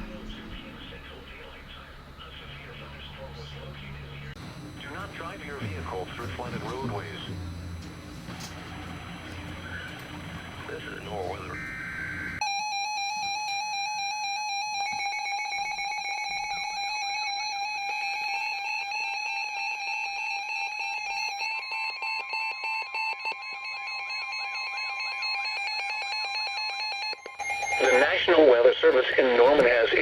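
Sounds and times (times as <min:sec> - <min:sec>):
steady electronic tone: 0:00.0 - 0:13.4
pulsing electronic warble: 0:08.7 - 0:21.8.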